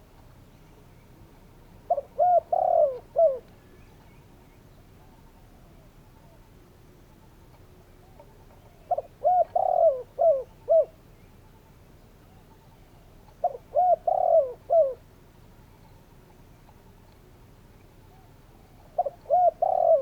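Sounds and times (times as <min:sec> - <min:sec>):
dove cooing: 0:01.5 - 0:04.2, 0:07.6 - 0:11.0, 0:12.2 - 0:15.1, 0:18.0 - 0:20.0.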